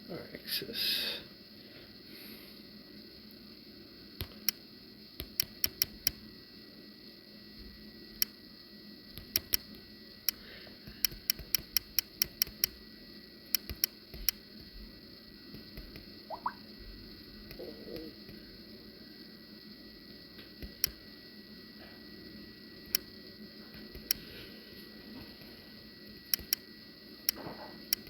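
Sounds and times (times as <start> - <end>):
sharp clicks from tapping controls: 5.2 - 6.2, 9.2 - 12.8, 13.5 - 14.7, 20.6 - 21.0, 23.7 - 24.2, 26.3 - 26.6, 27.3 - 28.0.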